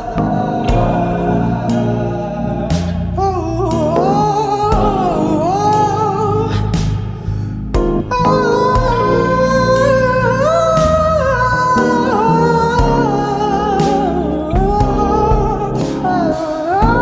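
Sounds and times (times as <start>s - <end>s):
instrumental rock music: 6.8s - 10.1s.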